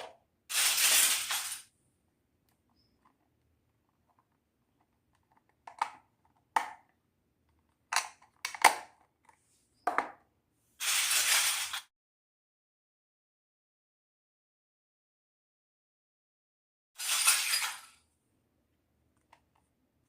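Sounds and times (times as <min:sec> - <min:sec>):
toy kitchen pieces clinking: 0:00.0 - 0:01.7, 0:03.8 - 0:06.9, 0:10.8 - 0:11.9, 0:17.0 - 0:18.0.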